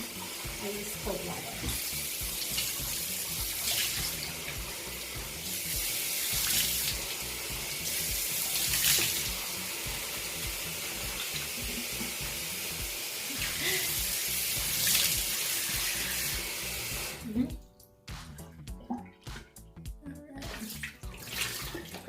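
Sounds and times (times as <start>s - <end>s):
water splashing: 0.0s - 10.0s, 20.4s - 22.0s
tap water running into sink: 0.0s - 17.4s, 20.5s - 22.0s.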